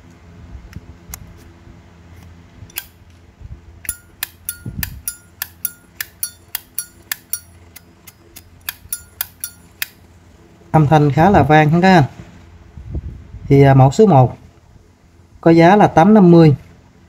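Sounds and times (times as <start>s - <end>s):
lighter lid clinking open and shut: 3.8s - 10.0s.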